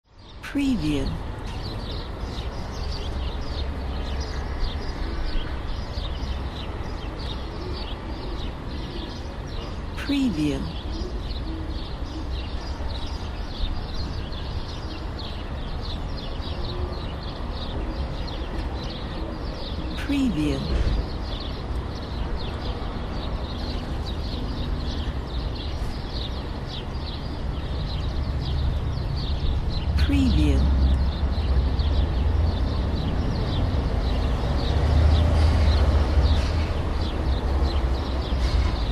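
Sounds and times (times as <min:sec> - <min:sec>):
small birds chirping: 0:00.1 - 0:38.9
traffic rumble: 0:00.2 - 0:38.9
distant traffic rumble: 0:19.8 - 0:38.9.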